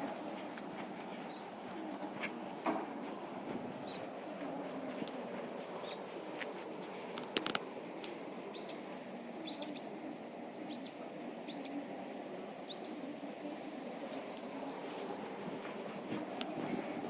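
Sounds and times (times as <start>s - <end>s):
low background noise: 0.0s - 17.0s
small bird chirping: 8.5s - 10.0s, 10.7s - 11.8s, 12.7s - 13.0s.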